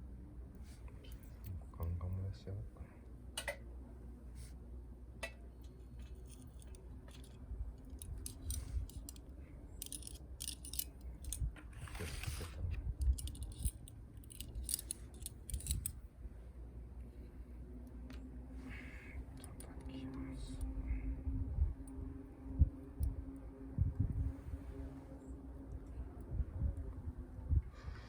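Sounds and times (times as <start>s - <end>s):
wind rumble on microphone: 7.4s - 9.6s, 11.1s - 14.8s, 19.2s - 28.0s.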